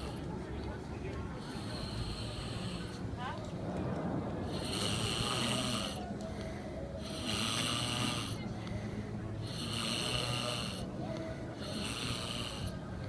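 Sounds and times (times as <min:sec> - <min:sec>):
person snoring: 0:04.5 - 0:06.1, 0:07.0 - 0:08.4, 0:09.4 - 0:10.9, 0:11.6 - 0:12.8.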